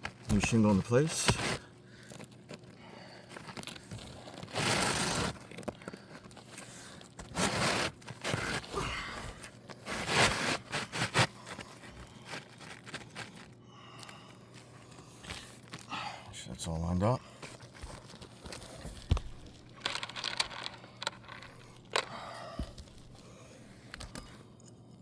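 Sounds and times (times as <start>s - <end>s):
shingle scraping against shingles: 4.4s - 5.6s, 7.2s - 8.7s.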